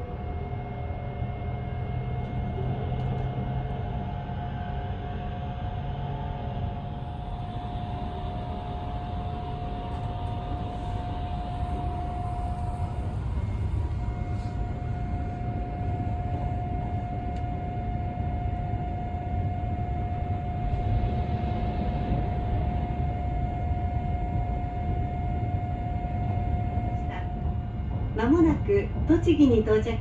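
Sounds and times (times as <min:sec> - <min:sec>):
train wheels rumbling on track: 0:00.0 - 0:18.0, 0:26.0 - 0:30.0
constant train whine: 0:00.0 - 0:30.0.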